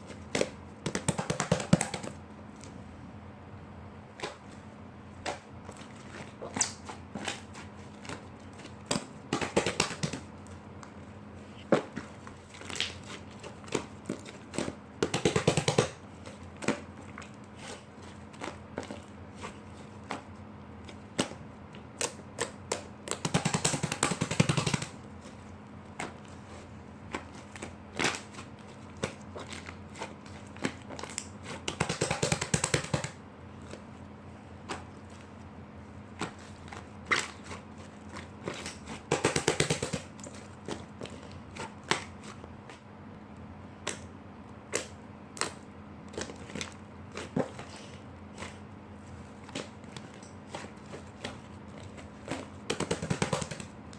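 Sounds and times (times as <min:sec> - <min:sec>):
slime being squished by hand: 0:05.2 - 0:42.9.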